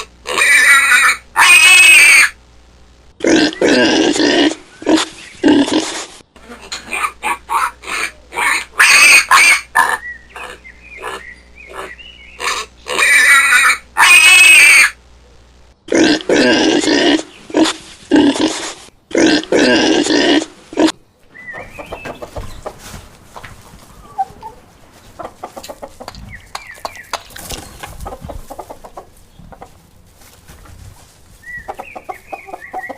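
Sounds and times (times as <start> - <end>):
pigs grunting and squealing: 0.0 - 2.4, 3.2 - 15.0, 15.9 - 21.0.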